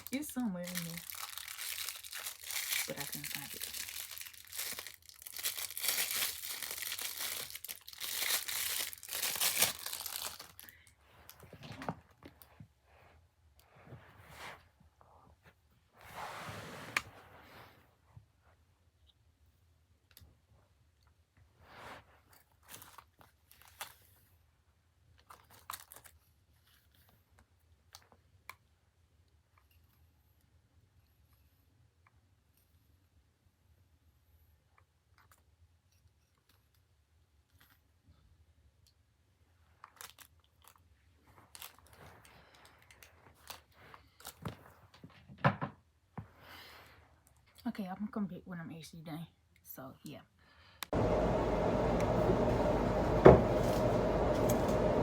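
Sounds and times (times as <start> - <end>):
scratchy rustling and crinkling: 0.0 - 18.1, 39.8 - 45.2
low steady hum: 51.0 - 55.0.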